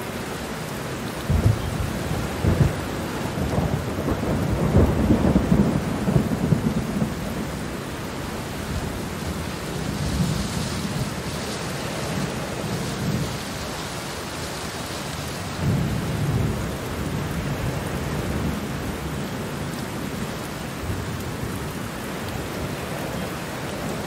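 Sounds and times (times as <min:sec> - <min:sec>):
steady rain: 0:00.0 - 0:24.0
thunder rumbling: 0:01.2 - 0:14.0, 0:15.3 - 0:22.8.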